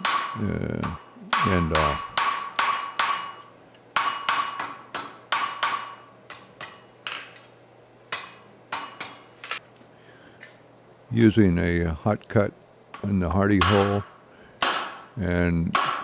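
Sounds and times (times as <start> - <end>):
hammer striking iron on anvil: 0.0 - 7.3, 8.1 - 9.2, 13.0 - 15.1, 15.7 - 16.0.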